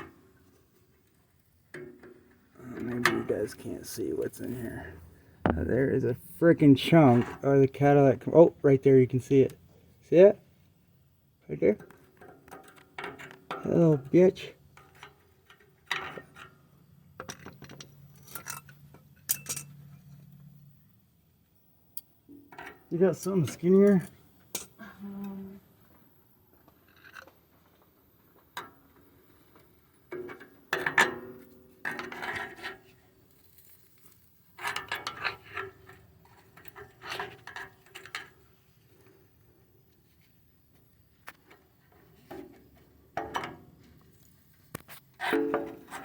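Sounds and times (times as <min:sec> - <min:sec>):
metal tool scraping and clinking: 0:17.2 - 0:20.2.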